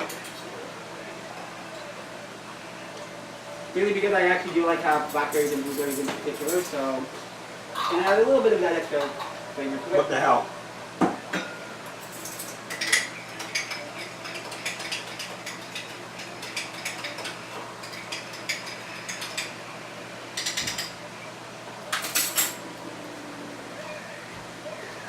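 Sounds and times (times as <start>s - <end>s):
kitchen utensils clicking and scraping: 4.8s - 6.9s, 12.0s - 19.6s, 21.9s - 22.6s.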